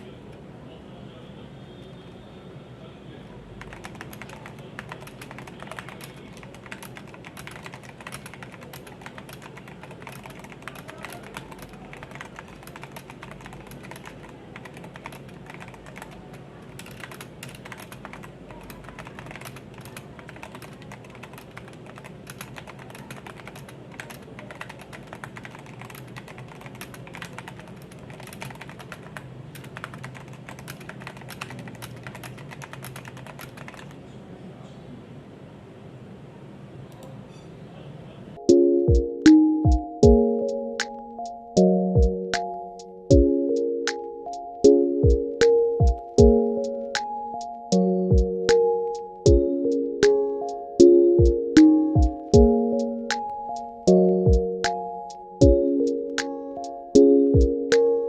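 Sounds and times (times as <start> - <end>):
mechanical keyboard typing: 3.6 - 34.0.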